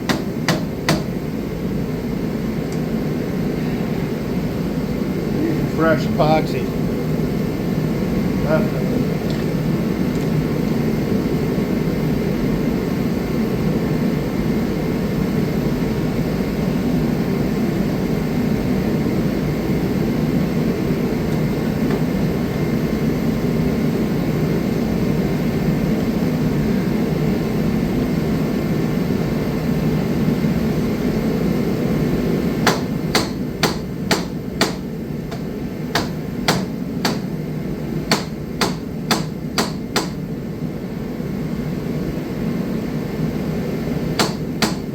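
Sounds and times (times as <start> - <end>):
sharp irregular taps: 32.7 - 37.3, 38.1 - 40.2, 44.2 - 44.9.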